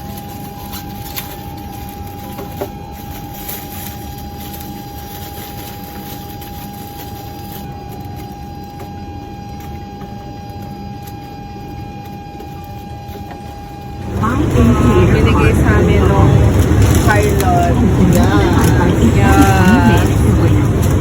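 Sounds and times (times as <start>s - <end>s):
constant high hum: 0.0s - 21.0s
vehicle interior rumble: 13.1s - 21.0s.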